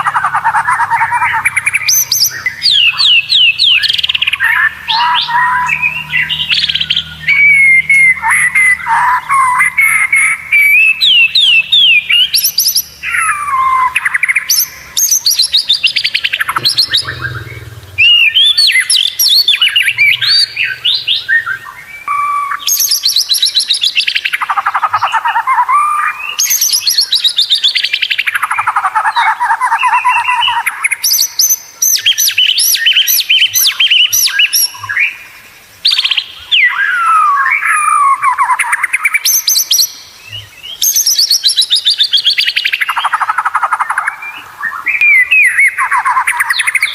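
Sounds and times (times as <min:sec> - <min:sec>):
bird singing whistles and chatter: 0:00.0 - 0:35.2.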